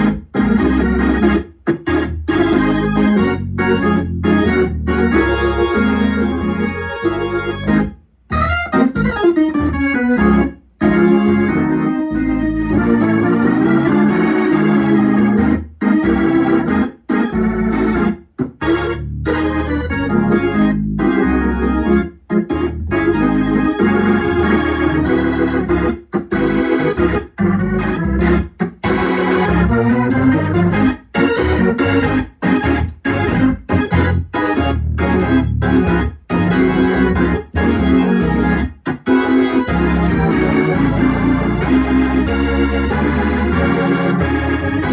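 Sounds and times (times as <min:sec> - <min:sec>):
low bass line: 0:00.0 - 0:44.9
organ chords: 0:00.0 - 0:44.9.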